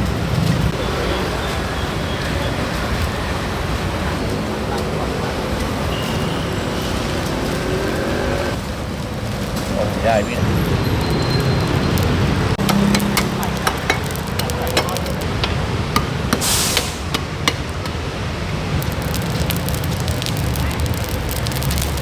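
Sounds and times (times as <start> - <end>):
road traffic rumble: 0.0 - 22.0
charcoal crackling and popping: 12.0 - 22.0
brief hiss: 16.4 - 17.1.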